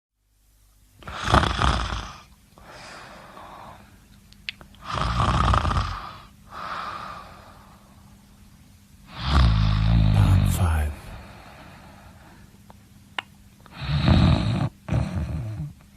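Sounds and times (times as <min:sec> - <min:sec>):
person snoring: 0:09.1 - 0:11.8.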